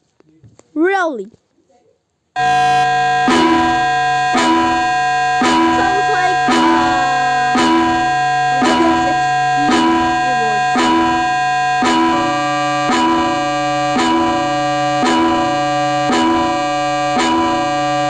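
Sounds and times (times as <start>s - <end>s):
electronic alert alarm tones: 2.4s - 18.0s.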